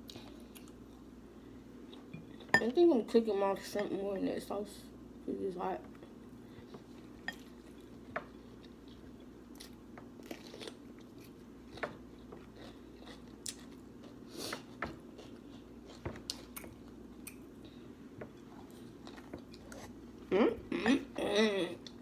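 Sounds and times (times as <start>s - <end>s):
person chewing and biting: 7.4s - 17.4s.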